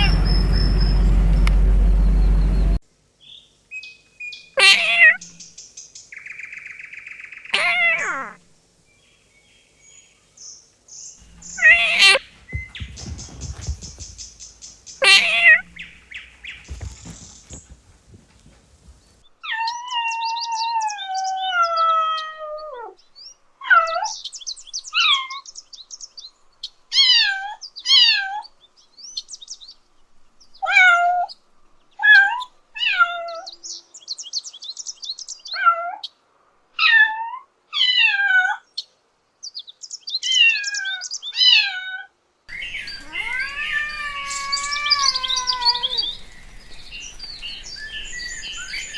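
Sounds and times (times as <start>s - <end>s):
kitten meowing: 4.6s - 5.2s, 7.6s - 8.4s, 11.4s - 12.8s, 15.0s - 15.8s, 43.0s - 46.2s
knocks and clicks: 11.3s - 14.8s.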